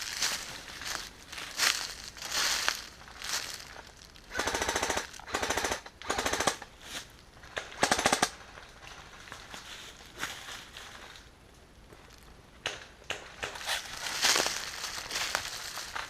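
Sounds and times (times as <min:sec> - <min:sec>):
airsoft gun full-auto bursts: 0:04.3 - 0:06.7, 0:07.8 - 0:08.3.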